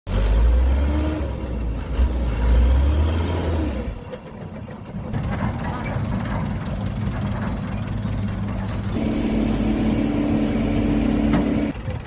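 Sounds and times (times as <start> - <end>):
model truck engine running: 3.9 - 12.0
high steady hum: 9.0 - 11.7.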